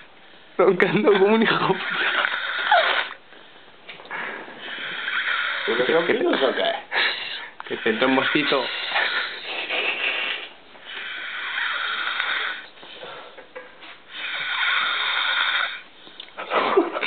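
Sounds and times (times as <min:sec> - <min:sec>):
quiet breaths: 0:01.7 - 0:16.4
man snoring heavily: 0:04.6 - 0:06.7, 0:07.7 - 0:09.4, 0:11.0 - 0:12.6, 0:14.2 - 0:15.8.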